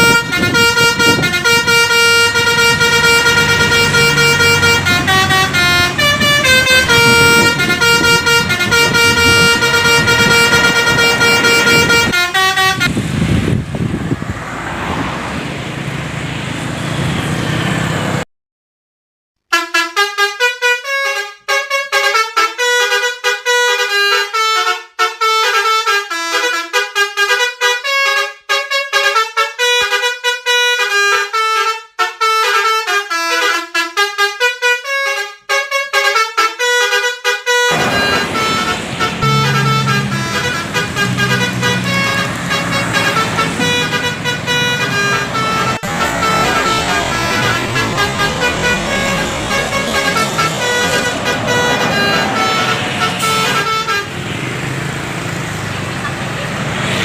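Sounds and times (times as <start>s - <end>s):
multi-tone bus horn melody: 0.0s - 13.9s, 19.5s - 57.0s
rough horn: 0.0s - 15.2s, 19.5s - 57.0s
low hum: 45.9s - 53.0s.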